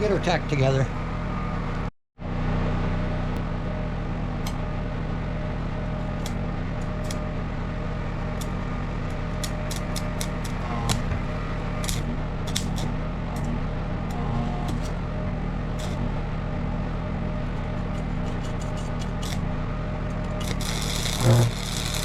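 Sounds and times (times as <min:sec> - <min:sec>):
generator engine running: 0:00.0 - 0:22.0
welding arc crackling: 0:03.4 - 0:16.2, 0:17.4 - 0:22.0.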